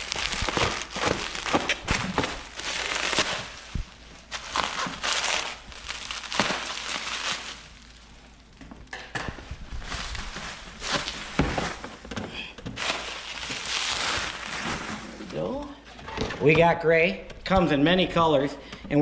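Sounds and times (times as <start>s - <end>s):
packing material crinkling: 0.0s - 15.7s.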